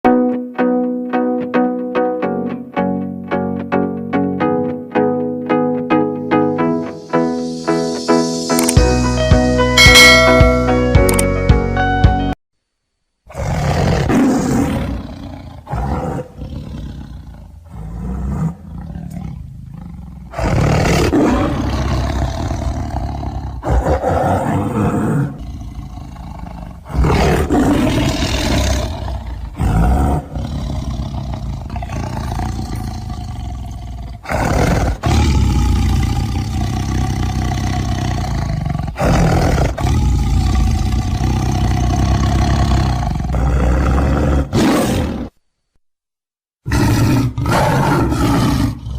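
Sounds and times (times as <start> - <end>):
tiger roaring and growling: 13.3 - 45.4, 46.6 - 48.9.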